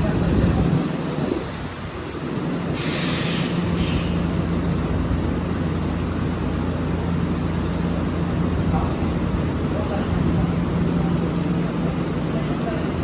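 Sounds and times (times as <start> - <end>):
loud air hiss: 0.0 - 5.0
electric train humming: 0.0 - 13.0.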